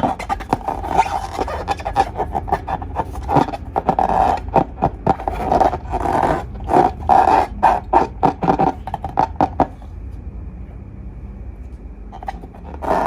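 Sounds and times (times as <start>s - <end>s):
slime squishing and crackling: 0.0s - 9.9s.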